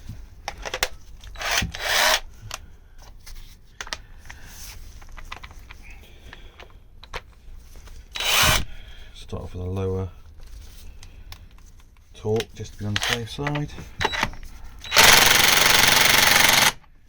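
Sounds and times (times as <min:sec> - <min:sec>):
tools clicking and knocking: 0:12.3 - 0:16.9.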